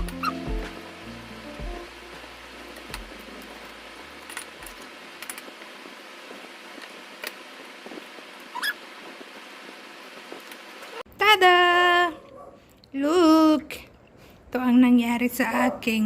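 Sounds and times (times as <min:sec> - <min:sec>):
steady low hiss: 0:00.0 - 0:11.0.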